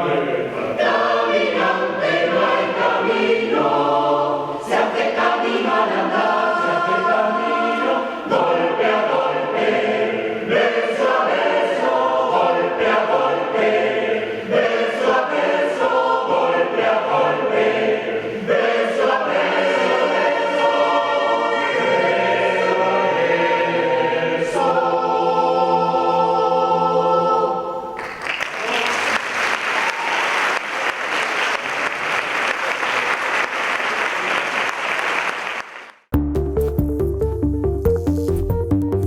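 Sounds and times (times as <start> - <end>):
choir singing: 0.0 - 28.1
audience applauding: 28.0 - 36.1.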